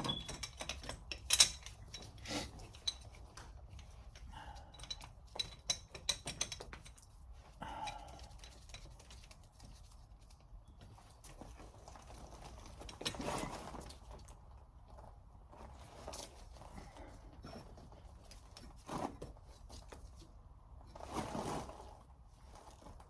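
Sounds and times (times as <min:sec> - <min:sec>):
metal tool clicks and clinks: 0:00.0 - 0:07.0.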